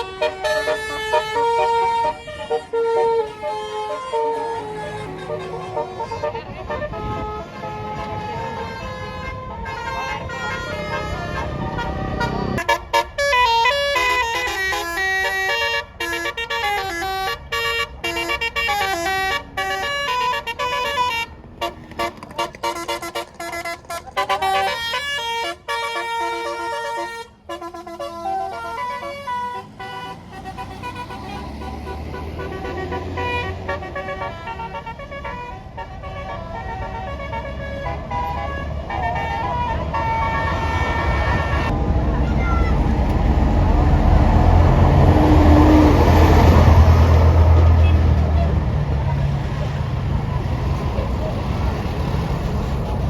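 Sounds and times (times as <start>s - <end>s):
musical air horn playing tune: 0.0s - 41.8s
bus engine rumbling: 0.0s - 53.0s.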